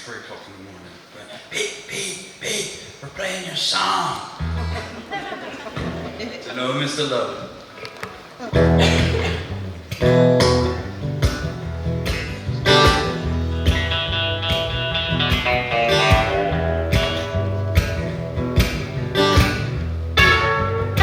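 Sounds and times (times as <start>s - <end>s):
guitars strumming: 4.3s - 6.4s, 7.8s - 21.0s
low bass line: 4.4s - 5.0s, 8.6s - 21.0s.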